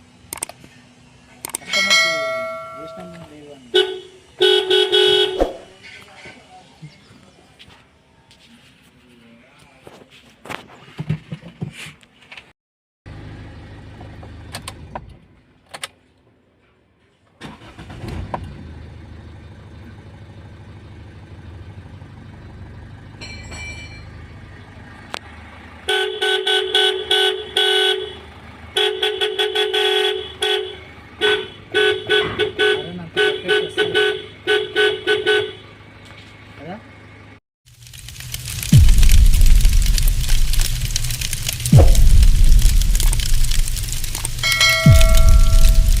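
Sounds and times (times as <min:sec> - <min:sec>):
car horn honking: 0:01.7 - 0:05.7, 0:25.9 - 0:35.8, 0:42.0 - 0:46.0
low steady hum: 0:38.2 - 0:46.0.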